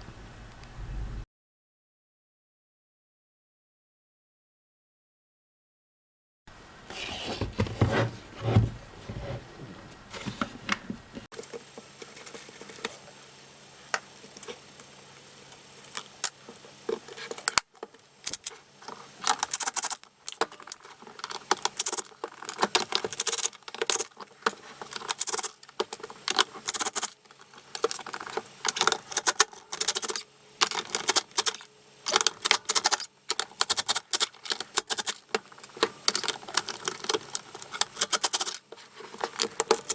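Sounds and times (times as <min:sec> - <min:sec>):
plastic and metal parts clicking: 0:13.9 - 0:39.9.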